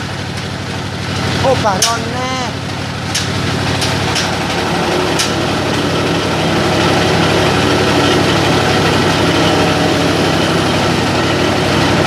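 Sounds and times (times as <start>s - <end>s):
mixer machine droning: 0.0s - 12.0s.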